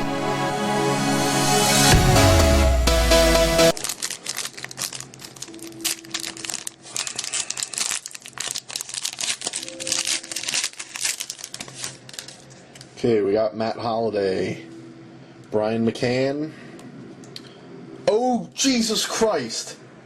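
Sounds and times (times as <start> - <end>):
wrapper crinkling: 3.7 - 12.9.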